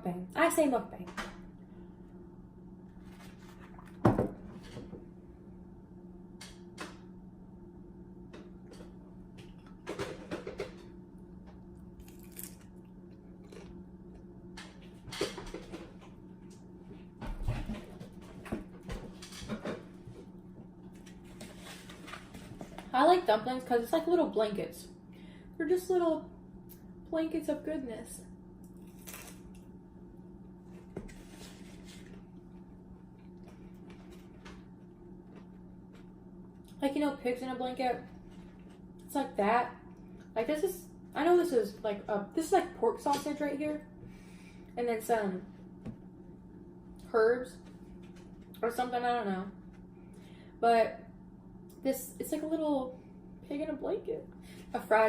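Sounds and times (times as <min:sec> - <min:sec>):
steady low hum: 0:00.0 - 0:55.0
biting and chewing: 0:11.8 - 0:14.3.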